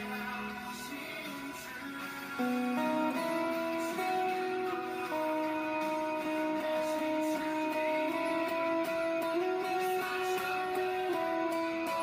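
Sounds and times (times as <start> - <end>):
electric guitar picked notes: 0.0 - 12.0.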